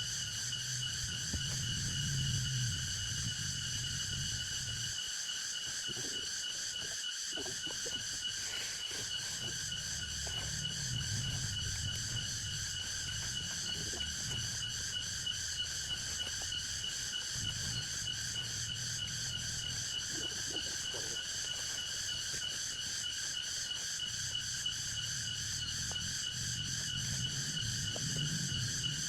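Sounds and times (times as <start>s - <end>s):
low rumble: 0.0s - 5.0s, 9.4s - 16.4s
insect chorus trilling: 0.0s - 29.0s.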